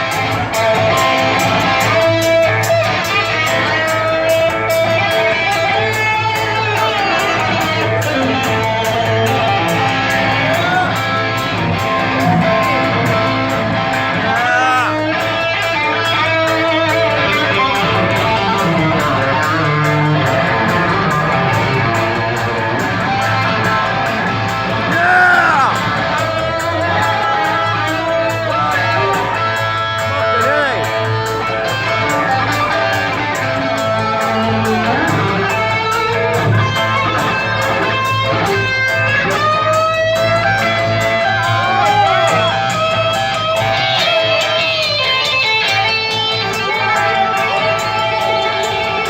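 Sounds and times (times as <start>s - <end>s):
electric guitar lead with bent notes: 0.0s - 49.0s
hard rock band playing: 0.0s - 49.0s.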